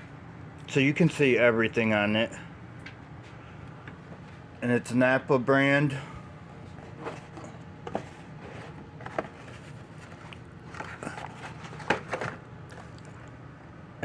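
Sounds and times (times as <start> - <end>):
steady low hum: 0.0 - 14.0
handling clicks and rustles: 6.4 - 13.1.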